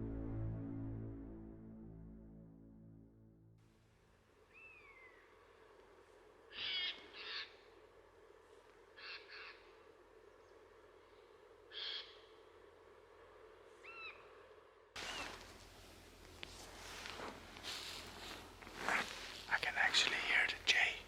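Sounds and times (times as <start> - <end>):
harsh bird calls: 6.5 - 7.6.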